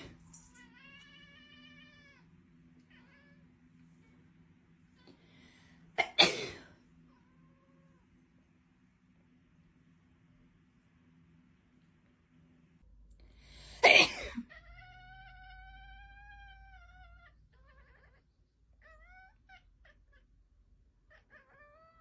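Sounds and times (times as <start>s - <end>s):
cat meowing: 0.0s - 3.5s, 14.4s - 20.3s, 21.1s - 22.0s.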